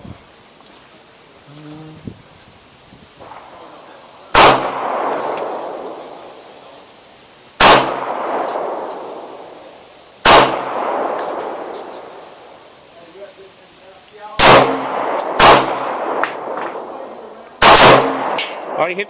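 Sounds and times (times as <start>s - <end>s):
pistol shots with echo: 3.2s - 6.5s, 7.6s - 12.6s, 14.4s - 18.9s.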